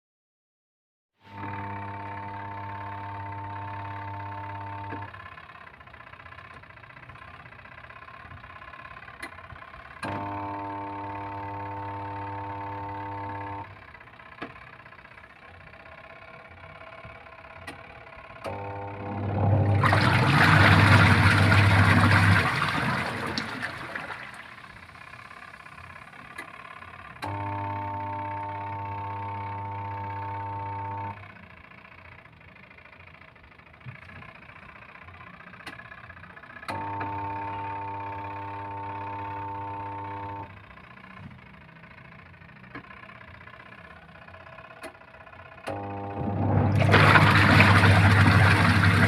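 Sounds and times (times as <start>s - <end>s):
washing machine motor humming: 1.3s - 49.0s
rushing water: 19.6s - 24.4s.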